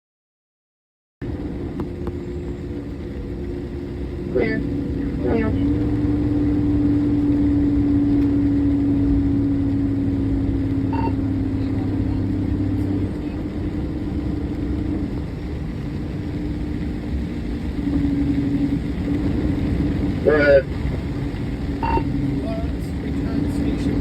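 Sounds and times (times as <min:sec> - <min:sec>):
vehicle engine running: 0:01.2 - 0:24.0.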